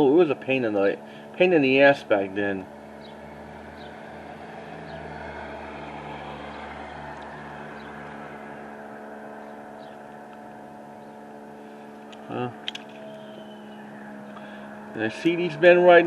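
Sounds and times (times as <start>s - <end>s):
engine humming: 0.0s - 16.0s
faint high chirps: 13.0s - 14.6s.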